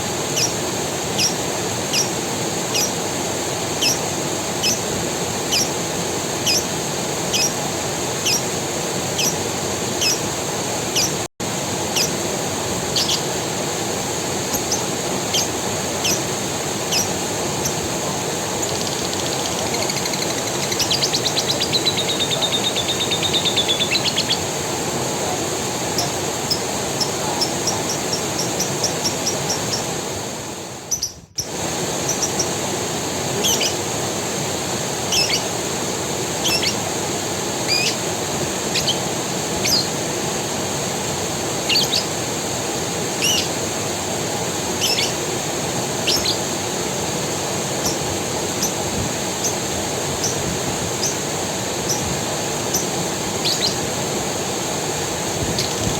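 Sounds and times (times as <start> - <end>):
creek water running: 0.0 - 55.9
birds calling: 0.2 - 3.0, 3.8 - 5.8, 6.4 - 10.3, 10.9 - 11.2, 11.9 - 12.2, 12.8 - 13.4, 14.4 - 30.1, 30.8 - 32.6, 33.4 - 33.8, 35.0 - 35.6, 36.3 - 36.9, 37.6 - 38.1, 38.7 - 40.0, 41.6 - 42.2, 43.1 - 43.6, 44.7 - 45.3, 45.9 - 46.7, 47.7 - 54.0.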